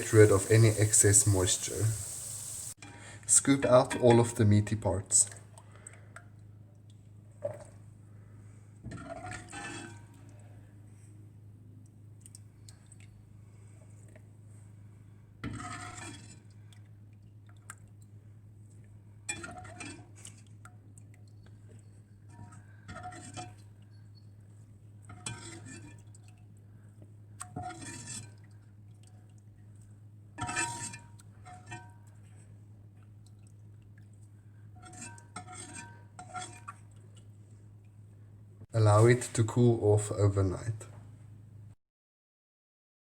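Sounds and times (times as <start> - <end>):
low steady hum: 0.0 - 2.8
metal utensil scraping a pot: 30.4 - 31.1, 34.8 - 36.8.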